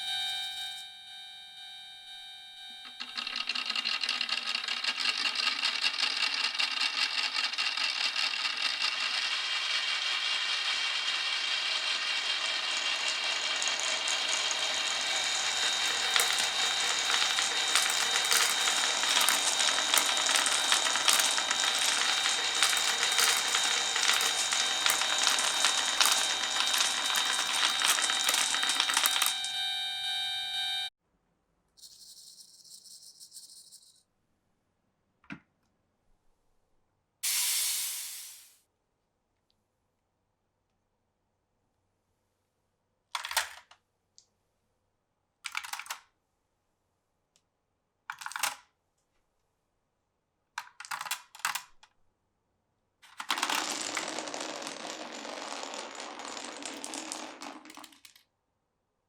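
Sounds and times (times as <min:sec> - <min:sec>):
faint ringing hum: 0:00.0 - 0:03.3
marbles rattling down a track: 0:03.0 - 0:29.4, 0:53.1 - 0:58.2.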